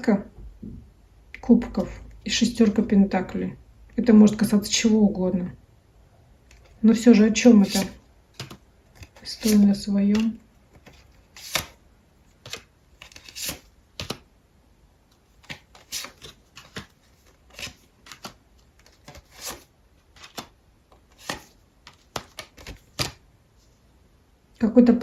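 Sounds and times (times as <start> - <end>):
cards slapping and rustling: 7.4 - 14.3, 15.2 - 23.2.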